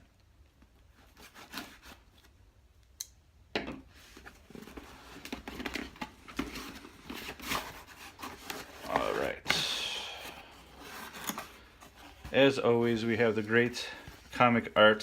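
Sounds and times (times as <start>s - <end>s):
cardboard rubbing and crinkling: 0.9s - 2.4s, 4.0s - 9.6s, 10.3s - 14.8s
cardboard box scraping: 6.4s - 9.6s.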